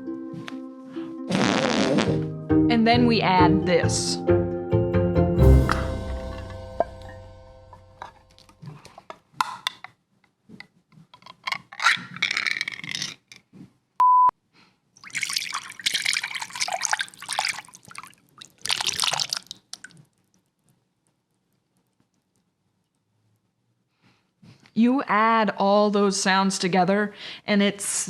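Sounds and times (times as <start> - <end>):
liquid splattering and dripping: 15.0 - 20.5.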